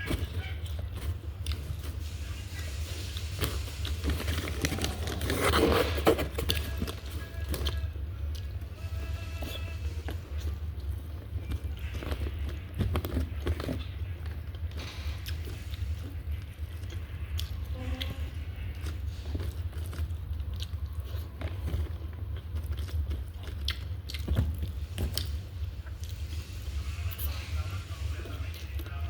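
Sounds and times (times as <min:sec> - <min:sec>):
person chewing and biting: 0:00.0 - 0:02.0, 0:09.4 - 0:26.4
steady low hum: 0:00.0 - 0:29.0.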